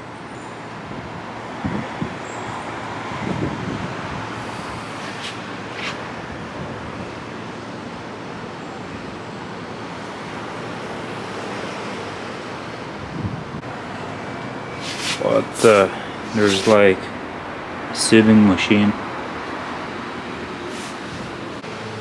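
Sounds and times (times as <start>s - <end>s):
city traffic rushing: 2.9s - 6.7s, 13.6s - 21.6s
wind on microphone: 3.2s - 6.8s, 13.6s - 21.6s.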